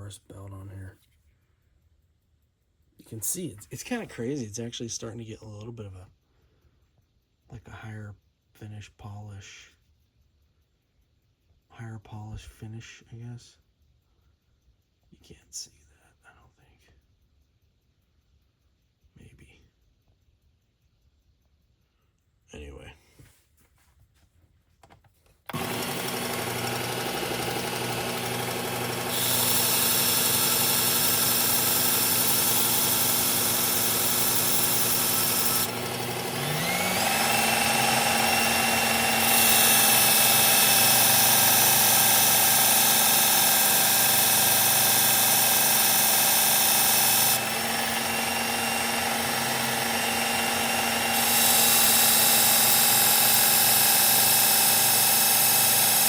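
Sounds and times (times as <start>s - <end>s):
belt sharpener motor whine: 25.5s - 56.0s.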